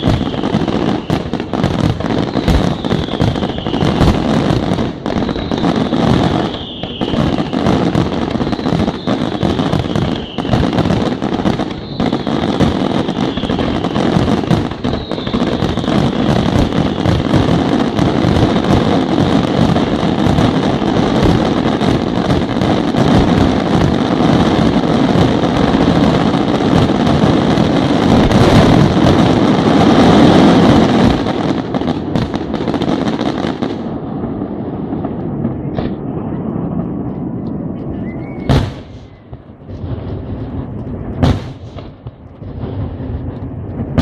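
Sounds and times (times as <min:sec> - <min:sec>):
fireworks bangs and crackling: 0:00.0 - 0:44.0
high falling whistle: 0:37.9 - 0:39.3.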